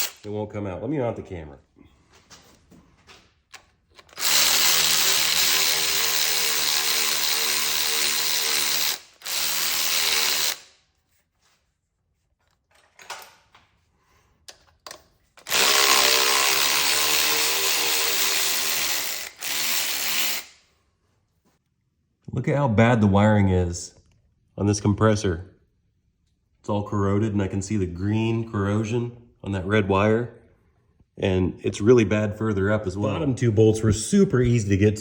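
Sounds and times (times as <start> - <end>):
power tool motor running: 0.0 - 0.2, 4.0 - 10.7, 15.4 - 20.6.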